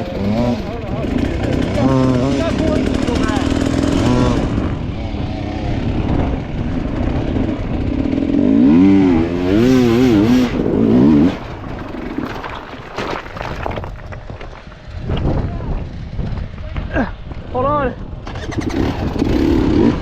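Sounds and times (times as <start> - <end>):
dirt bike engine revving: 0.0 - 12.2, 18.1 - 20.0.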